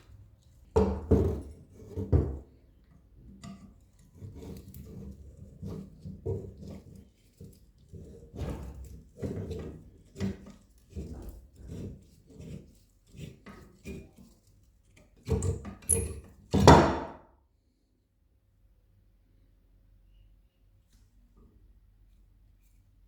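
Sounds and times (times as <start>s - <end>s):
tool knocks and scrapes: 0.7s - 2.6s, 3.2s - 17.2s.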